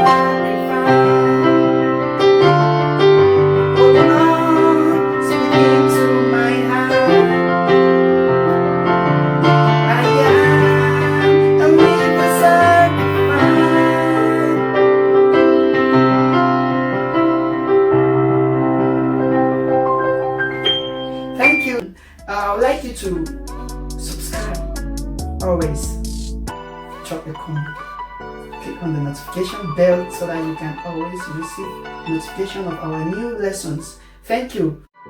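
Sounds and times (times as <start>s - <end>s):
keyboard piano chords: 0.0s - 35.0s
bass line: 17.1s - 26.8s.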